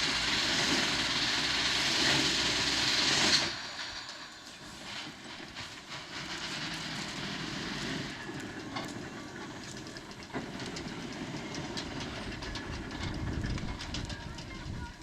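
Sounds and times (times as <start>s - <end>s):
steam hissing: 0.0s - 8.6s
mechanical rattle and clatter: 3.1s - 15.0s.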